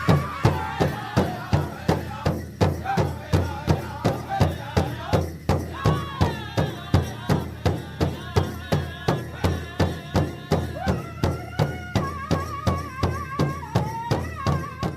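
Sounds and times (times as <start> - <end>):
voices chanting held notes: 0.0 - 11.2
drum steady beat: 0.0 - 14.9.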